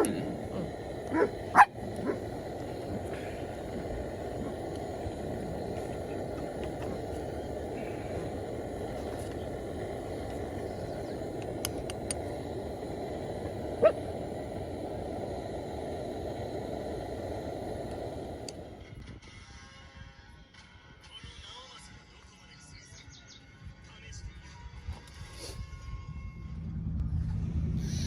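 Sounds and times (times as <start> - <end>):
wind buffeting microphone: 0.0 - 19.2.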